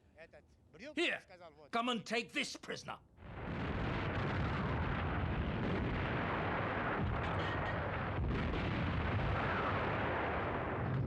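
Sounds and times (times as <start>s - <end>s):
distant artillery and explosions: 3.2s - 11.0s.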